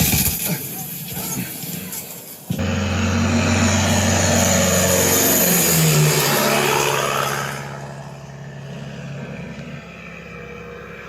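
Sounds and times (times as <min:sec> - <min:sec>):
recorded car engine through speakers: 0:02.3 - 0:11.0.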